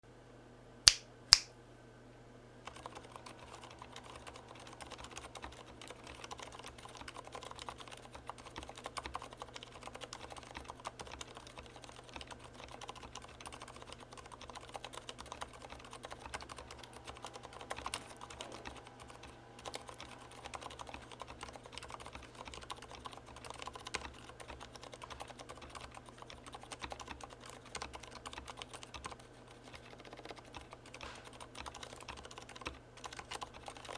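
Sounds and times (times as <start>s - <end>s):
sharp clicks: 0.9s - 1.5s
soft keyboard typing: 2.6s - 33.9s.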